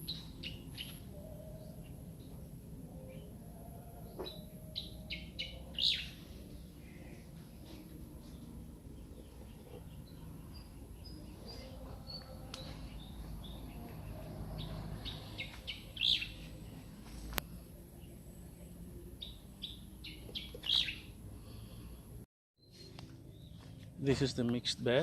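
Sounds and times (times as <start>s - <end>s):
small birds chirping: 8.2s - 17.4s, 19.2s - 21.7s.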